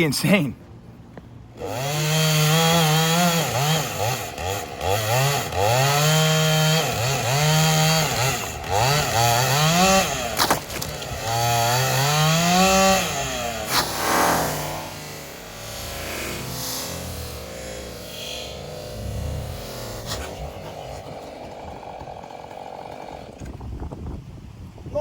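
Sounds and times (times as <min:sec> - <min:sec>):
chainsaw cutting wood: 0:01.6 - 0:23.8.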